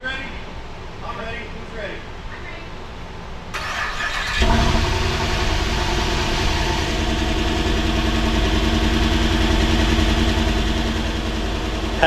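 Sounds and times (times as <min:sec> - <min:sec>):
engine starting and idling: 0:03.5 - 0:12.0.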